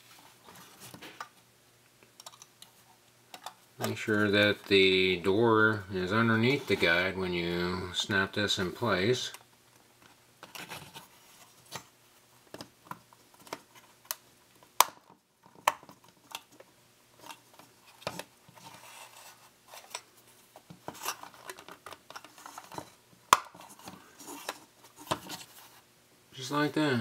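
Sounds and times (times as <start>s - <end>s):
plastic parts clicking and scraping: 2.0s - 4.7s, 14.9s - 25.8s.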